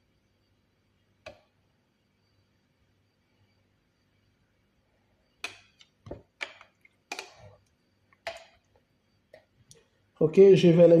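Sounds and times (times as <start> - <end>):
kitchen things clicking and knocking: 5.4 - 7.6, 8.2 - 8.6.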